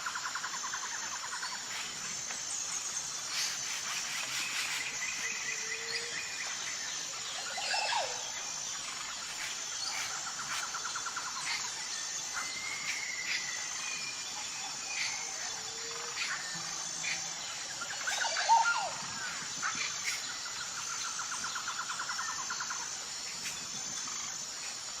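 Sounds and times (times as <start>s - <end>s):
high-pitched insect drone: 0.0s - 25.0s.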